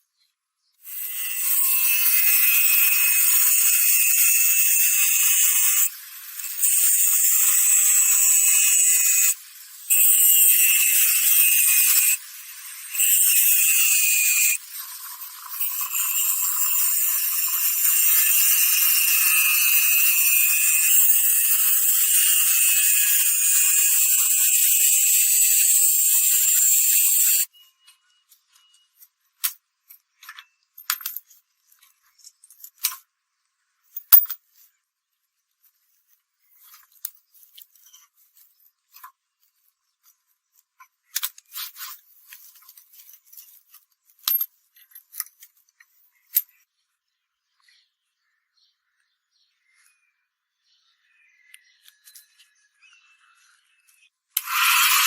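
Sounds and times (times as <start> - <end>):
power tool working steel: 0.8 - 27.5, 54.4 - 55.0.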